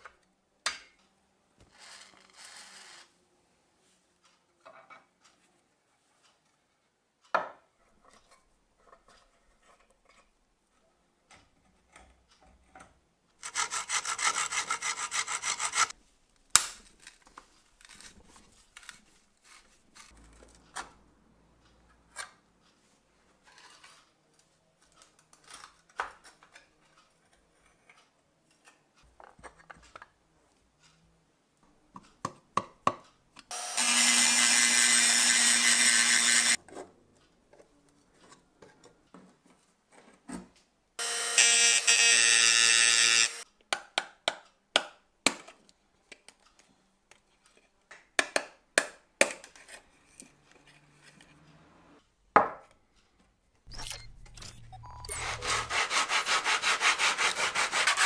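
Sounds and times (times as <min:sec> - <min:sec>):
loud steady power tool: 0:33.5 - 0:36.6, 0:41.0 - 0:43.4
low hum: 0:53.7 - 0:55.8
rapid metal scraping: 0:53.7 - 0:58.0.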